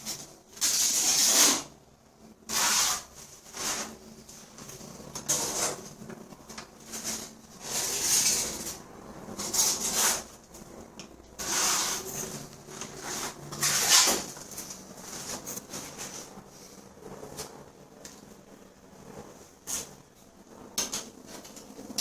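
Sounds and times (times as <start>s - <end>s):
rough rubbing on hard surface: 2.5s - 4.2s, 5.3s - 6.0s, 6.8s - 10.4s, 11.4s - 17.4s.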